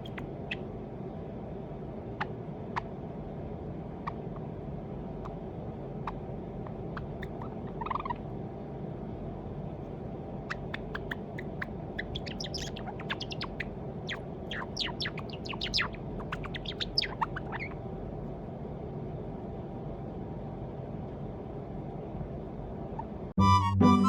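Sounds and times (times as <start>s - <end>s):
sparrow clicking and chirping: 10.5s - 17.8s.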